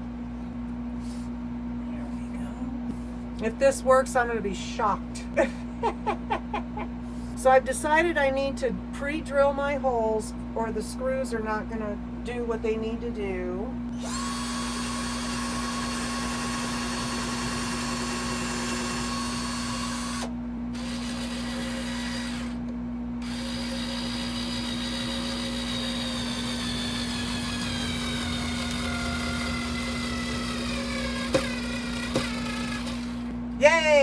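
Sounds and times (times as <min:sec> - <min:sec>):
power drill whining: 0:14.0 - 0:22.6, 0:23.2 - 0:33.4.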